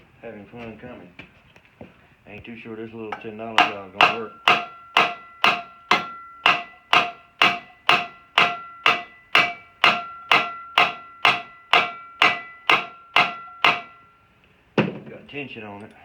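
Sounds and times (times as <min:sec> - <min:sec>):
hammer striking steel: 0:03.1 - 0:14.2.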